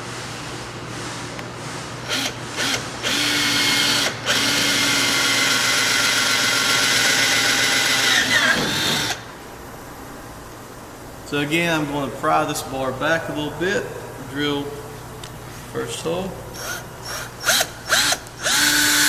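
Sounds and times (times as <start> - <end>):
power drill boring through plastic: 2.1 - 9.2, 17.4 - 19.0.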